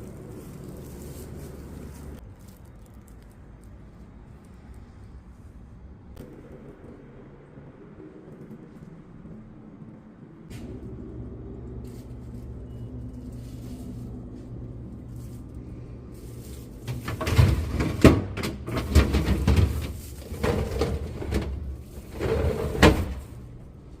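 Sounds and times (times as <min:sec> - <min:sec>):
low hum: 0:04.1 - 0:18.0.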